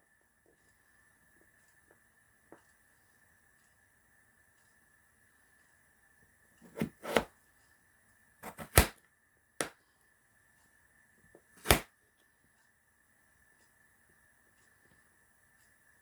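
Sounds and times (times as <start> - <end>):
knife cutting on cutting board: 6.6 - 7.3, 8.4 - 8.9, 11.6 - 11.8.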